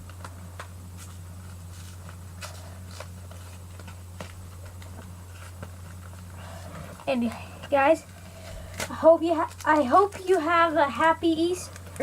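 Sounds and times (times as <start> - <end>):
foil wrapper crinkling and tearing: 0.0 - 6.3, 8.3 - 10.5
steady low hum: 0.0 - 12.0.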